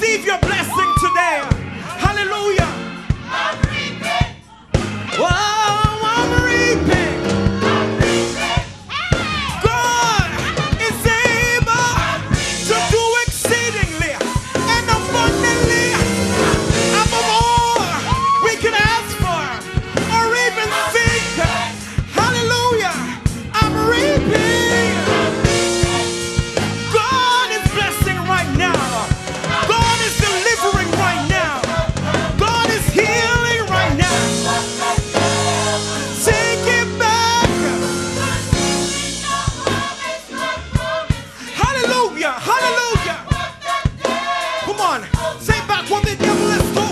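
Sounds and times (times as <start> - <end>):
bass: 0.0 - 46.9
drum kit: 0.0 - 46.9
gospel song lead vocal: 0.0 - 46.9
person singing: 4.4 - 8.2, 14.0 - 26.3, 32.4 - 39.4, 44.6 - 46.9
held chords: 6.2 - 8.7, 14.6 - 18.0, 23.6 - 27.0, 32.2 - 40.7.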